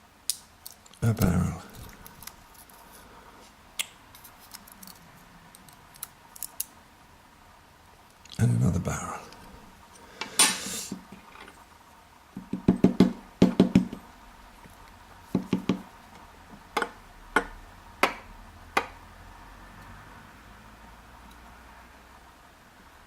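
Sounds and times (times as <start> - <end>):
small metal lock parts clicking: 5.6 - 6.7
short scrape: 10.4 - 11.0.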